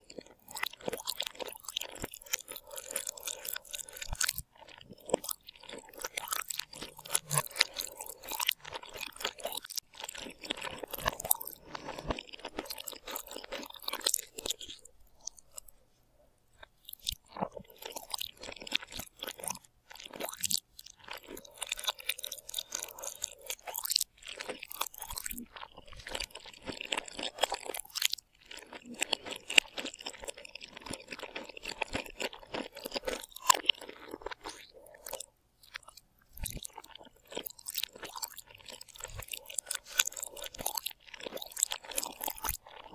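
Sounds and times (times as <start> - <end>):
person chewing crunchy food: 0.0 - 42.9.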